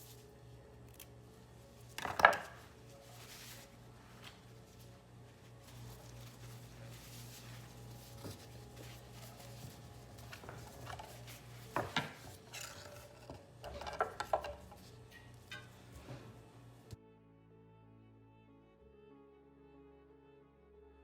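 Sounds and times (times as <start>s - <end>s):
dishes knocking and clinking: 2.0s - 2.6s, 11.7s - 15.7s.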